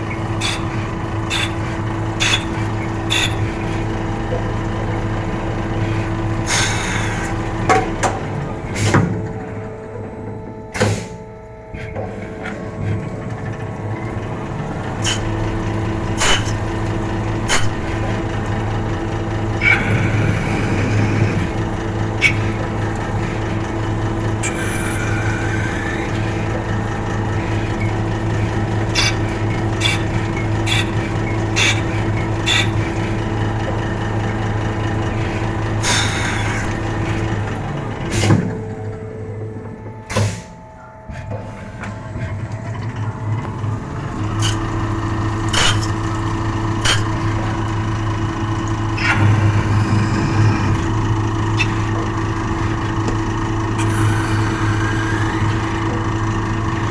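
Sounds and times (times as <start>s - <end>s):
machine hissing: 0.0s - 3.9s, 6.4s - 7.5s, 19.5s - 33.6s, 35.0s - 38.5s, 40.1s - 56.9s
lathe motor and spindle hum: 0.0s - 56.9s.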